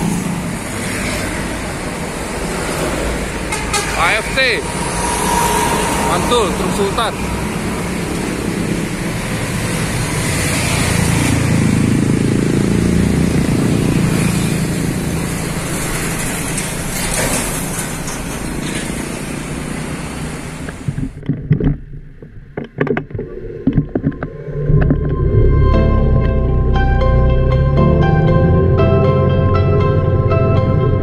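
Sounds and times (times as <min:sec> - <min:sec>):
diesel truck engines rumbling: 0:00.0 - 0:21.2, 0:23.4 - 0:31.0
road noise: 0:00.0 - 0:31.0.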